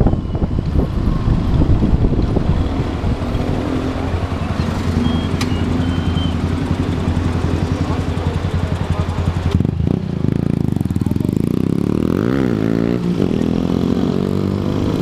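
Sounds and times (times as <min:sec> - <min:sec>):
wind noise on microphone: 0:00.0 - 0:05.0
motorcycle engine running: 0:00.0 - 0:15.0.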